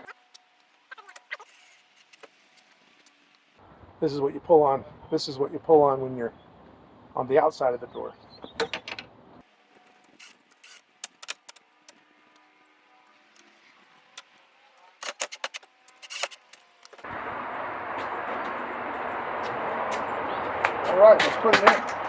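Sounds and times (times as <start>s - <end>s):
steady rushing noise: 17.1s - 22.0s.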